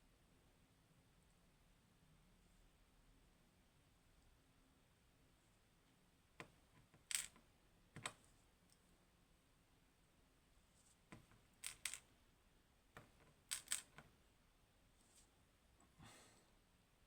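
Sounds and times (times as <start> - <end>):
small metal parts clicking: 7.1 - 7.4, 11.6 - 12.1, 13.4 - 14.1.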